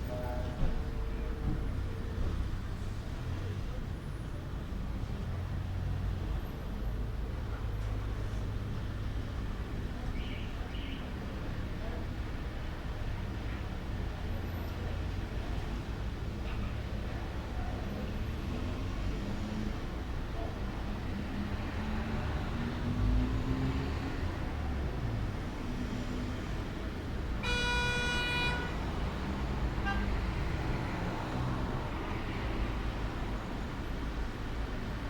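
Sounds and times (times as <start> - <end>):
traffic rumble: 0.0 - 35.0
vehicle horn: 27.4 - 28.9, 29.8 - 30.2.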